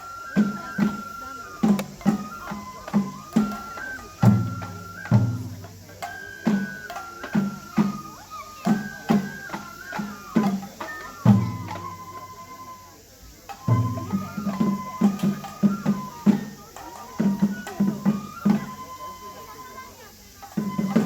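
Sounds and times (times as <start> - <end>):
bamboo flute melody: 0.0 - 21.0
taiko drum strikes: 0.4 - 8.1.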